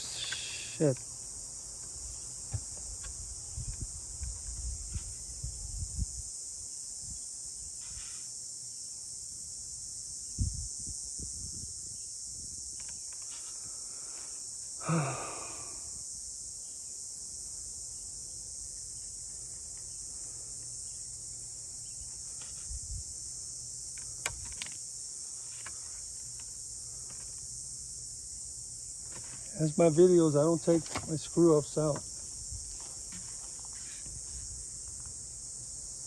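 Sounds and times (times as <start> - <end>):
insect trilling: 0.0 - 6.3, 9.8 - 36.0
faint click: 0.2 - 1.0
man sighing: 14.8 - 15.9.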